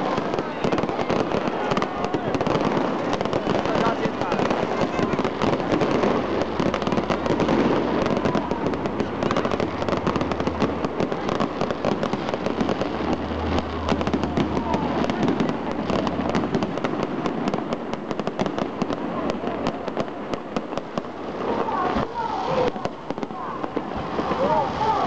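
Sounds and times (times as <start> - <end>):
fireworks crackling and popping: 0.0 - 25.0.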